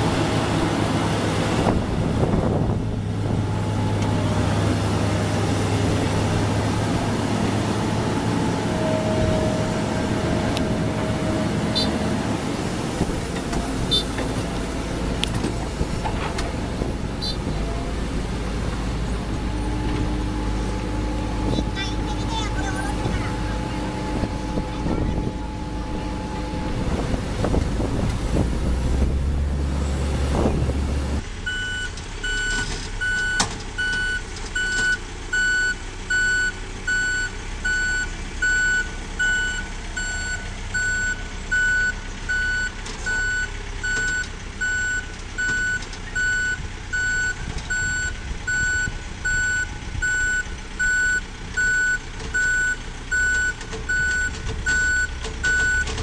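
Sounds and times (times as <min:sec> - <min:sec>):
engine rumbling: 0:00.0 - 0:56.0
heavy vehicle engine running: 0:00.0 - 0:56.0
reversing alarm beeping: 0:31.5 - 0:55.9.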